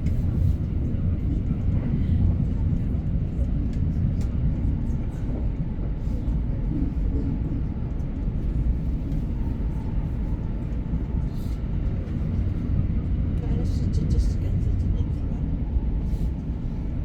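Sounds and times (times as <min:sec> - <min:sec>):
train rumbling: 0:00.0 - 0:17.0.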